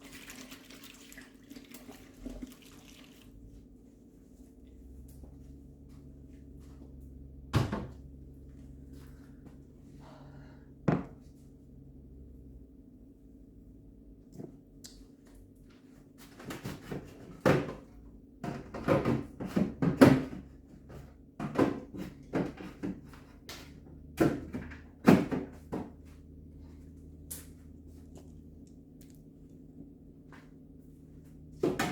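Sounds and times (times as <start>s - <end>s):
fridge low hum: 0.0s - 31.9s.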